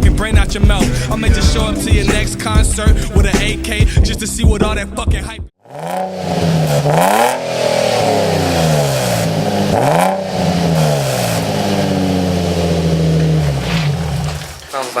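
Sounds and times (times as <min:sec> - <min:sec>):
car engine revving: 0:05.6 - 0:14.6.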